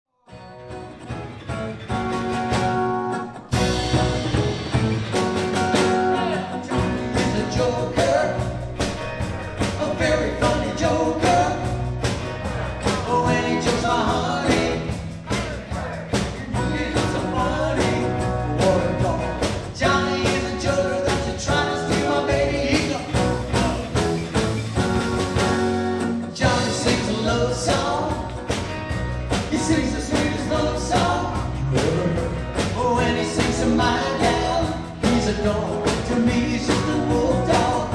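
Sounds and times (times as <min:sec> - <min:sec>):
rock and roll band playing: 0:00.3 - 0:37.9
person singing: 0:05.8 - 0:24.2, 0:26.3 - 0:28.6, 0:29.4 - 0:37.9.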